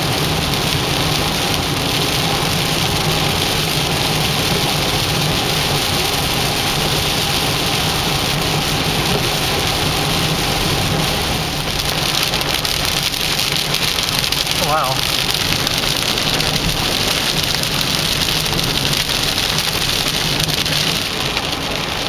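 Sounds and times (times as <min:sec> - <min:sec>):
heavy rain falling: 0:00.0 - 0:22.0.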